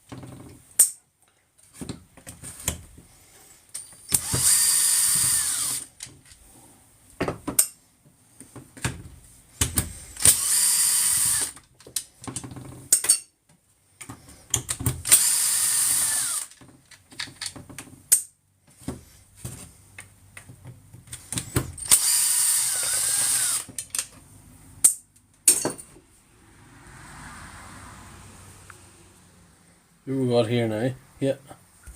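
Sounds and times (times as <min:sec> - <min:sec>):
cordless power tool motor: 0:04.1 - 0:05.9, 0:10.2 - 0:11.6, 0:15.1 - 0:16.5, 0:21.8 - 0:23.8.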